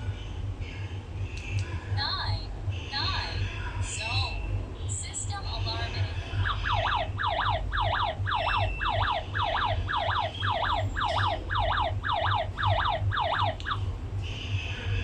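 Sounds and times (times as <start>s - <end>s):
low hum: 0.0s - 15.0s
alarm siren wailing: 6.4s - 13.9s.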